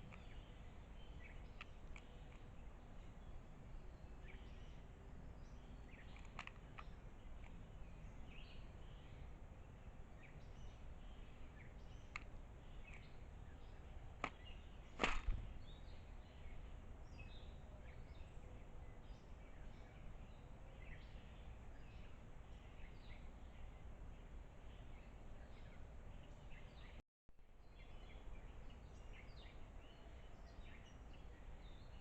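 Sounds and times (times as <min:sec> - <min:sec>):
small birds chirping: 0:00.0 - 0:27.0, 0:27.6 - 0:32.0
low outdoor rumble: 0:00.0 - 0:32.0
sharp click: 0:15.0 - 0:15.4.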